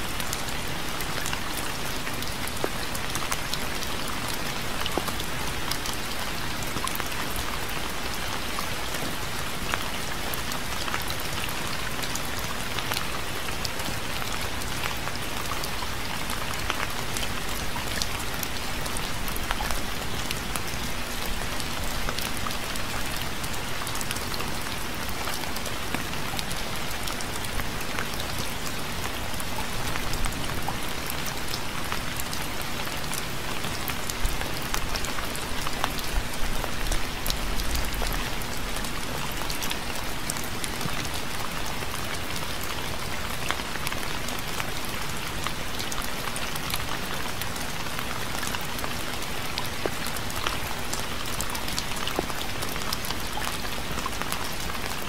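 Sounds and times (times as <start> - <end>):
steady rain hiss: 0.0 - 55.0.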